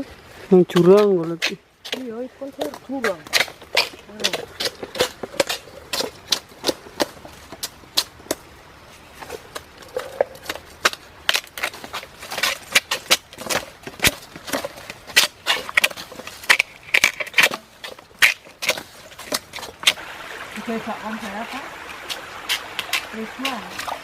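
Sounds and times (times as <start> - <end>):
bamboo cracking and snapping: 9.9 - 20.0.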